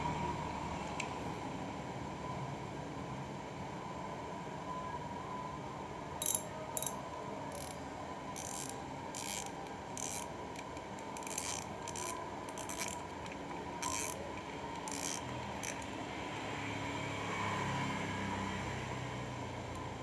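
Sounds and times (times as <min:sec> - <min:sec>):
fishing reel ratcheting: 0:06.2 - 0:07.8, 0:08.4 - 0:16.0.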